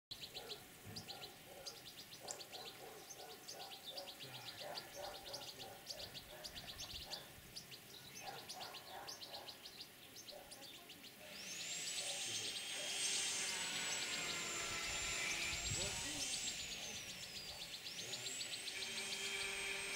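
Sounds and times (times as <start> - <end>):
finch twittering: 0.1 - 19.9
rising whine with hiss: 11.4 - 19.9.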